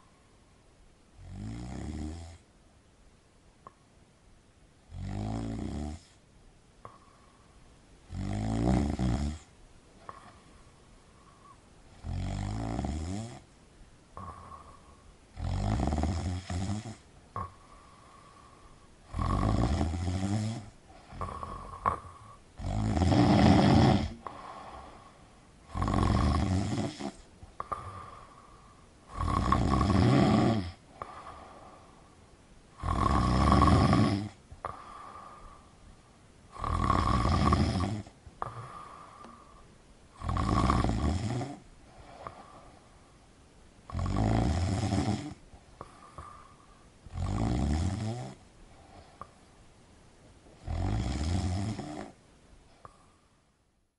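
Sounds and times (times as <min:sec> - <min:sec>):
person snoring: 0:04.9 - 0:06.2, 0:08.1 - 0:10.4, 0:11.3 - 0:13.4, 0:14.2 - 0:31.9, 0:32.7 - 0:35.7, 0:36.5 - 0:42.8, 0:43.9 - 0:49.3, 0:50.6 - 0:52.2
faint breathing: 0:06.8 - 0:07.8, 0:10.0 - 0:12.0, 0:14.1 - 0:15.4, 0:16.5 - 0:19.2, 0:19.9 - 0:22.6, 0:23.2 - 0:29.9, 0:30.7 - 0:40.5, 0:41.6 - 0:43.4, 0:45.4 - 0:47.2, 0:48.3 - 0:49.7, 0:52.0 - 0:53.7.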